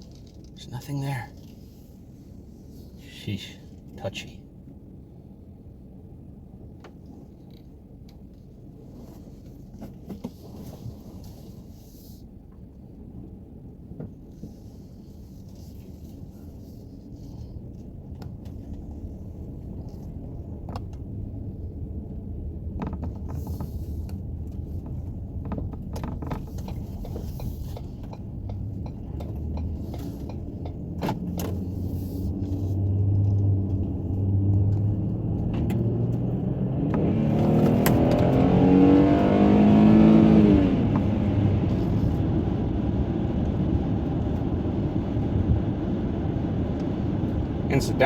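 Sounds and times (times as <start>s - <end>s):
road and tyre noise: 0.0s - 48.0s
car engine revving: 23.1s - 48.0s.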